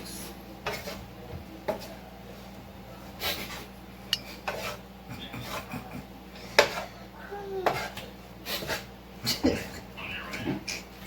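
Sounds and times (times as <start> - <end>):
utensil scraping in a pan: 0.1 - 2.6, 3.2 - 4.9, 6.5 - 7.0.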